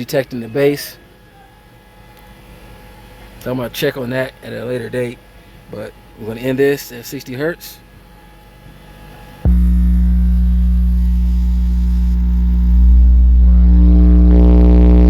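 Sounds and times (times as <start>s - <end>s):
loud bass test tone: 9.4s - 15.0s.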